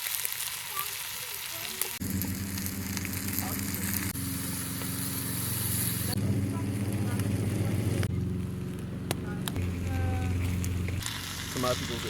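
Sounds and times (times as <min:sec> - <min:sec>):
food sizzling in a pot: 0:00.0 - 0:06.2, 0:09.6 - 0:12.0
low droning hum: 0:02.0 - 0:12.0.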